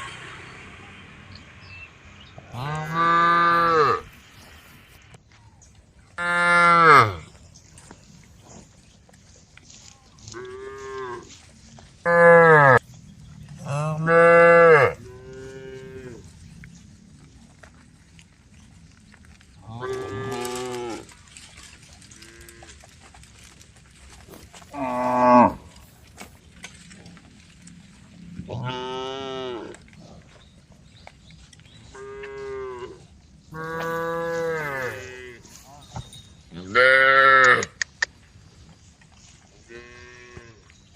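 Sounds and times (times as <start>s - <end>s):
cows mooing: 2.5s - 4.2s, 6.2s - 7.3s, 12.0s - 12.8s, 13.5s - 16.3s, 19.6s - 22.9s, 24.6s - 25.9s, 28.4s - 29.9s, 31.9s - 36.0s, 36.6s - 37.8s, 39.7s - 40.6s.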